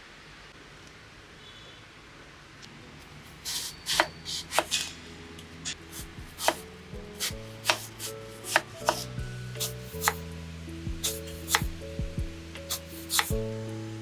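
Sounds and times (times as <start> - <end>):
knife chopping on cutting board: 3.0 - 4.9, 6.0 - 10.2, 11.0 - 11.8, 12.7 - 13.4
soft background music: 3.1 - 14.0.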